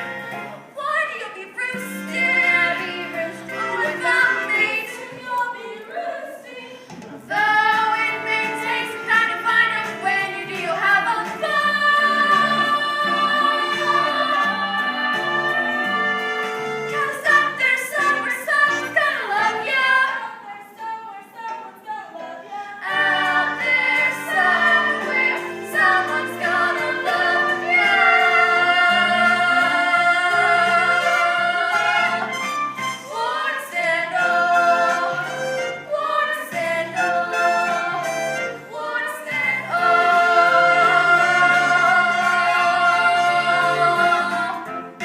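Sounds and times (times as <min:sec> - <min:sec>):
group singing musical theatre: 0:00.0 - 0:45.0
instrumental accompaniment: 0:06.8 - 0:20.0, 0:22.8 - 0:45.0.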